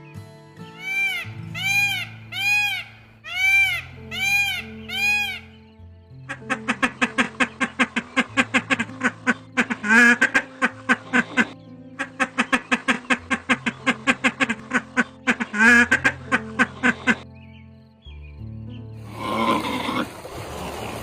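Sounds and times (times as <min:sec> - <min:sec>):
drawn-out duck quacks: 0:00.8 - 0:05.6, 0:06.2 - 0:17.2
ducks quacking: 0:00.8 - 0:05.6, 0:06.2 - 0:17.2.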